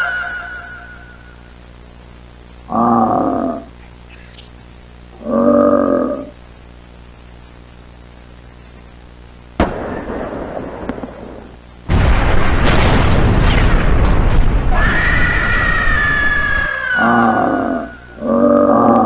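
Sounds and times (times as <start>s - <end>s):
low hum: 0.0s - 19.0s
monster roar: 2.7s - 3.7s, 14.6s - 19.0s
explosion-like rumble: 9.6s - 16.7s
sharp bang: 11.9s - 16.7s.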